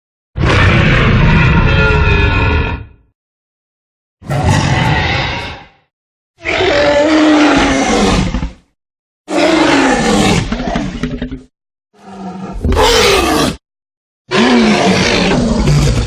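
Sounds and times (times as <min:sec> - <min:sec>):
monster roars: 0:00.4 - 0:03.0, 0:04.2 - 0:05.8, 0:06.4 - 0:08.6, 0:09.3 - 0:11.1, 0:12.0 - 0:13.6, 0:14.3 - 0:16.0.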